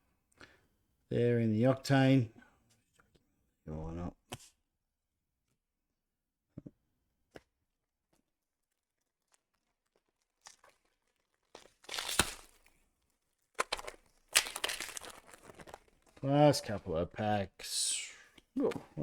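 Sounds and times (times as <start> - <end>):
plastic wrapper tearing and crinkling: 8.6 - 16.2.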